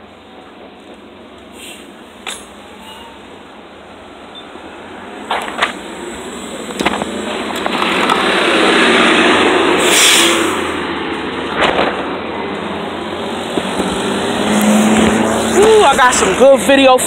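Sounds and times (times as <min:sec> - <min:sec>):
road vehicle noise: 0:00.0 - 0:17.0
short sharp hiss: 0:01.5 - 0:03.1, 0:09.8 - 0:10.7.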